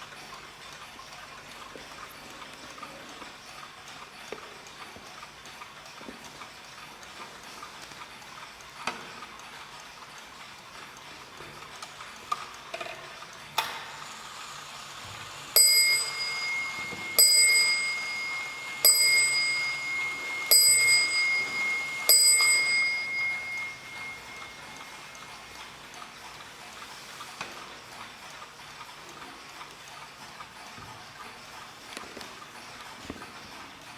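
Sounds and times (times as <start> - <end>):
clock ticking: 0.0 - 33.9
clock striking on a bell: 15.3 - 25.8.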